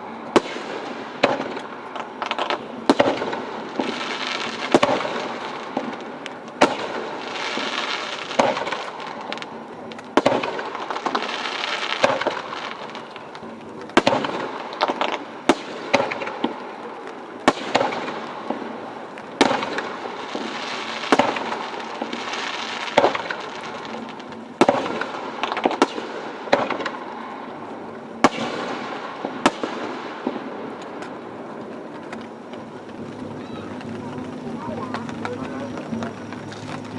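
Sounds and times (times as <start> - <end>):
firework crackling: 0.0 - 36.9
firework shells bursting: 0.3 - 36.9.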